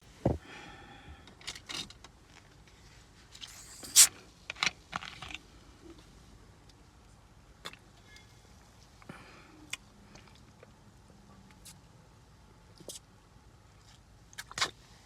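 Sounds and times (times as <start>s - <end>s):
can opening hiss crack and fizz: 3.4s - 4.1s.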